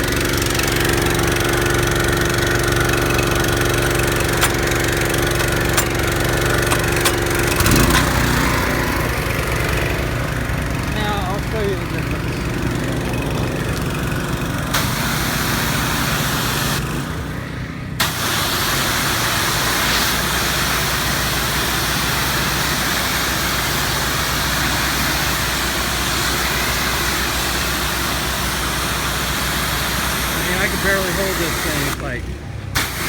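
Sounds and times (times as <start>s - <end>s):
petrol engines running: 0.0s - 33.0s
high-pressure water jet hissing: 14.7s - 17.1s, 18.0s - 32.2s, 32.8s - 33.0s.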